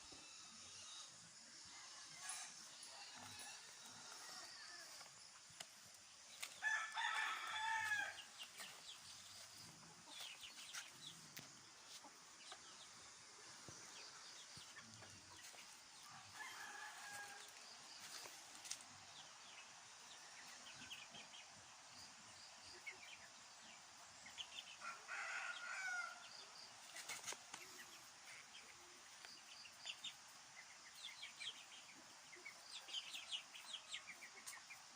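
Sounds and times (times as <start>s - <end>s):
chickens clucking: 1.8s - 16.4s, 26.8s - 31.1s
rooster crowing: 6.6s - 8.3s, 16.1s - 17.6s, 24.8s - 26.3s.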